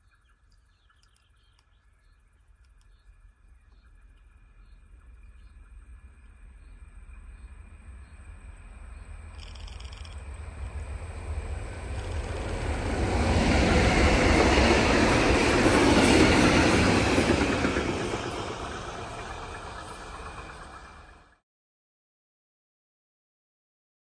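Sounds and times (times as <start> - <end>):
train passing: 3.1 - 21.4.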